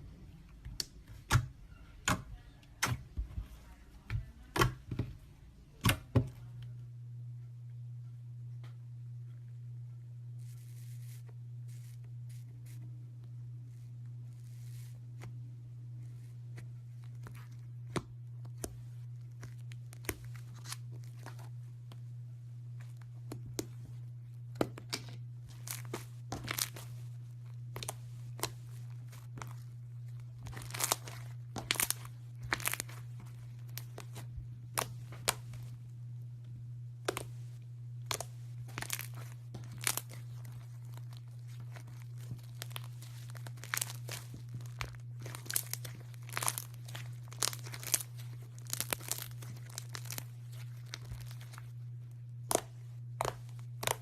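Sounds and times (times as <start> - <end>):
steady low hum: 0.0 - 54.0
slime crackling and popping: 24.6 - 27.0, 27.6 - 35.8, 37.0 - 37.4, 38.0 - 51.8, 52.4 - 54.0.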